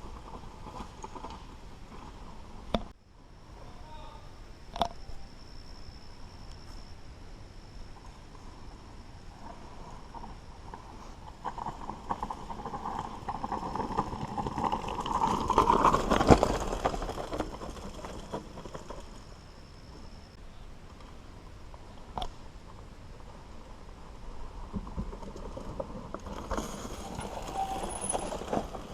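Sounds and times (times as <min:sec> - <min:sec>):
bike rattling over bumps: 0:00.0 - 0:02.9, 0:09.3 - 0:20.1, 0:20.8 - 0:28.9.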